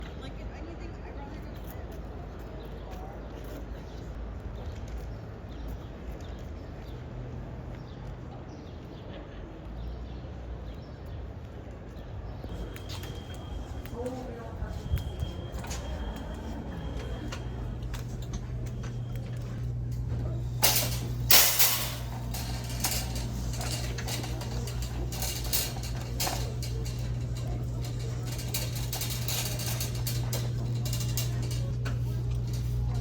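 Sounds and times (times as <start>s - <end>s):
low hum: 15.0s - 33.0s
goods clattering: 16.8s - 33.0s.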